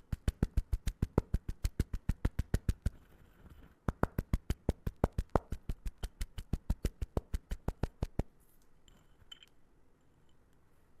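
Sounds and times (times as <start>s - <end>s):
rapid even sharp clicks: 0.0s - 3.1s, 3.8s - 8.3s.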